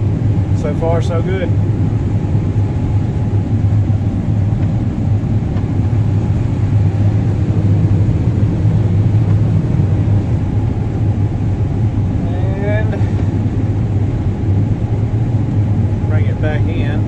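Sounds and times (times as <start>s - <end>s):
combine harvester running: 0.0s - 17.0s.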